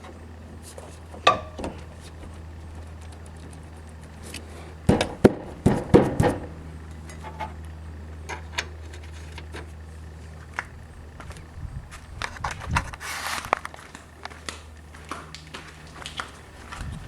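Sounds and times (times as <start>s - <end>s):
low hum: 0.0s - 17.0s
metal knocks and clicks: 1.1s - 2.3s, 4.8s - 7.6s.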